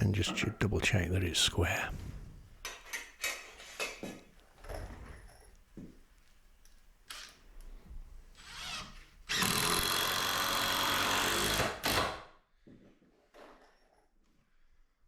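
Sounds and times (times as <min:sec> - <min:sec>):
power drill driving a screw: 0:08.4 - 0:12.3.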